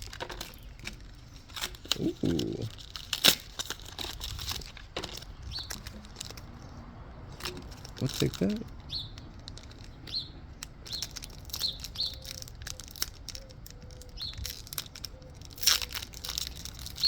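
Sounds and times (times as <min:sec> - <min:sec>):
wrapper crinkling: 0:00.0 - 0:17.0
songbird chirping: 0:08.0 - 0:15.5.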